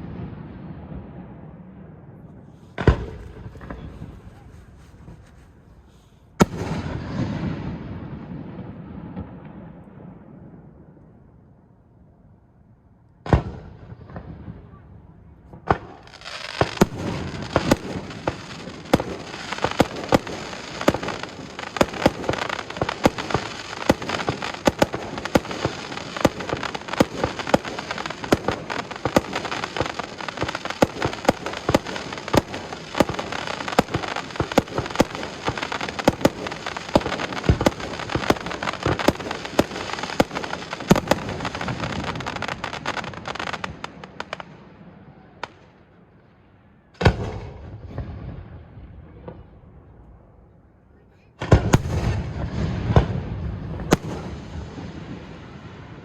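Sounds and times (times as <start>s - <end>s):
firework bangs: 0.0s - 10.4s, 13.2s - 45.8s, 47.0s - 49.6s, 51.4s - 56.0s
fireworks crackling and popping: 2.4s - 9.5s, 15.5s - 45.8s, 51.4s - 56.0s.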